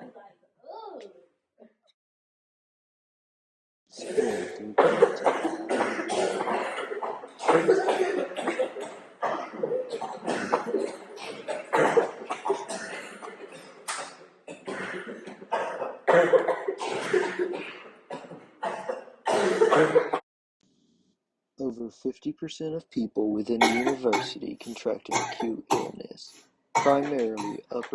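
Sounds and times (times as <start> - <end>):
people coughing: 3.9 - 20.2, 23.4 - 26.2, 26.8 - 27.9.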